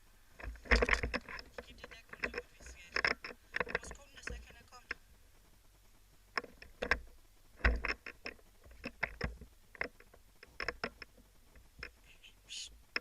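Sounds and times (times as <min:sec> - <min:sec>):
sharp clicks and knocks: 0:00.4 - 0:05.0, 0:06.3 - 0:12.0.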